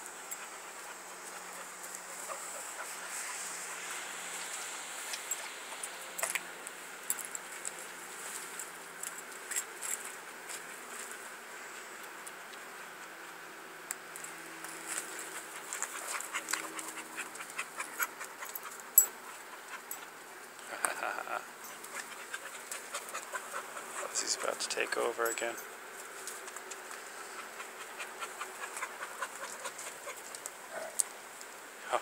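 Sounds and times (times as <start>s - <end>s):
dog panting: 0.1s - 4.6s, 15.0s - 20.1s, 21.6s - 25.6s, 27.1s - 31.0s.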